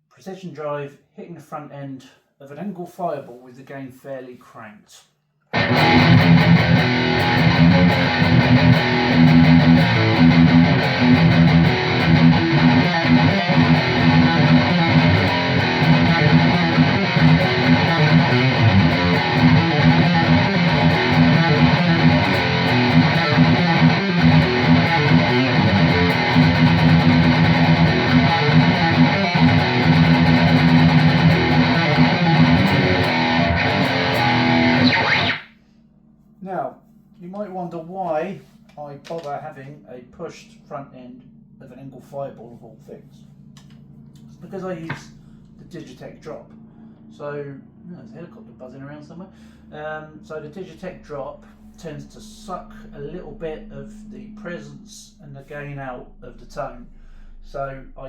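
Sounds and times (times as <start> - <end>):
distorted electric guitar riffs: 5.6 - 35.5.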